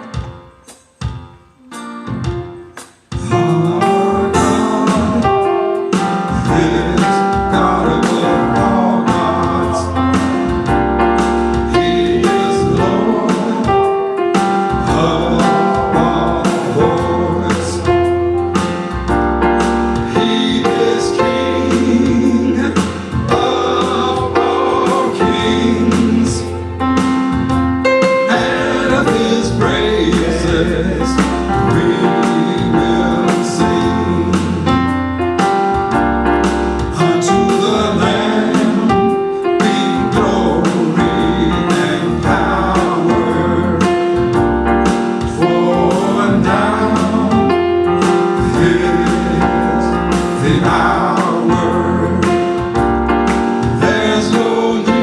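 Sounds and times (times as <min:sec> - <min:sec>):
drum hits: 0:00.0 - 0:55.0
keyboard: 0:00.0 - 0:55.0
choir singing: 0:03.2 - 0:27.1, 0:27.9 - 0:34.8, 0:36.9 - 0:55.0
held bass notes: 0:14.7 - 0:39.4, 0:40.0 - 0:55.0.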